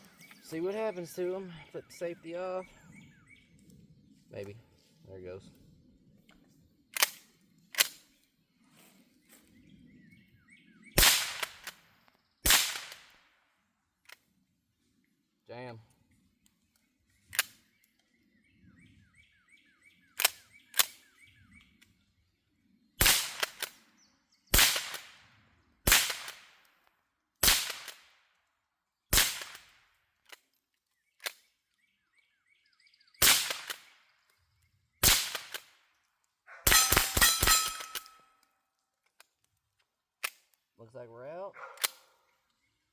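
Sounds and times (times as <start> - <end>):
faint bird chirps: 0.0 - 11.0, 15.5 - 23.0
sharp clicks: 6.9 - 8.0, 17.3 - 18.0, 20.2 - 21.0, 23.3 - 23.8, 33.2 - 34.4, 35.0 - 35.8, 36.7 - 38.2
rifle shots with echo: 11.0 - 11.8, 12.4 - 13.2, 23.0 - 23.8, 24.5 - 25.2, 25.9 - 26.6, 27.4 - 28.1, 29.1 - 29.8, 33.2 - 34.0, 35.0 - 35.7, 36.6 - 38.2.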